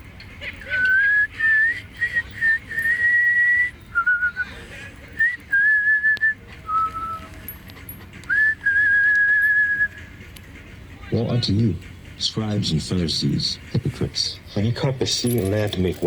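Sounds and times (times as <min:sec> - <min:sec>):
person whistling: 0:00.8 - 0:04.5, 0:05.2 - 0:07.3, 0:08.3 - 0:10.0.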